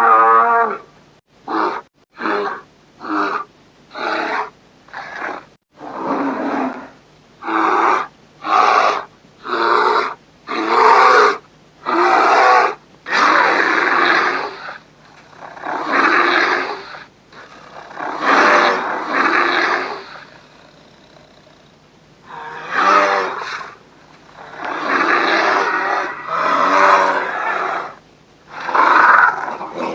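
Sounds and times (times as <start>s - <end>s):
creature roaring and growling: 15.4s - 21.7s, 22.3s - 29.9s.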